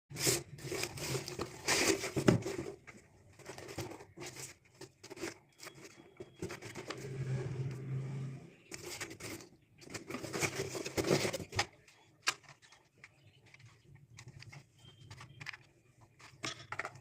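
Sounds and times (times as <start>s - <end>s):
packaging rustling and tearing: 0.2s - 2.7s, 8.7s - 11.7s.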